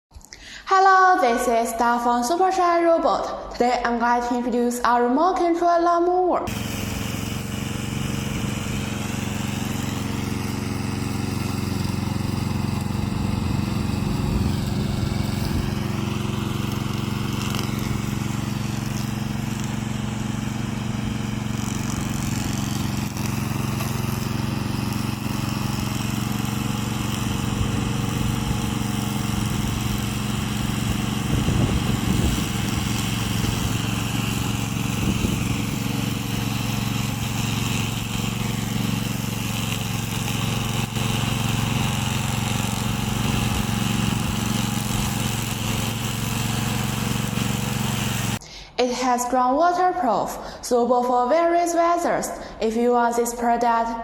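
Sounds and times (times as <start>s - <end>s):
lawn mower engine running: 6.5s - 48.4s.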